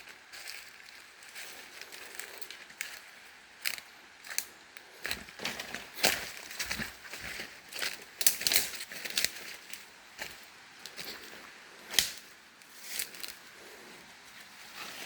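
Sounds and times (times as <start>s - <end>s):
footsteps crunching through dry leaves: 0.0s - 15.0s
sharp twig crack: 11.9s - 12.3s.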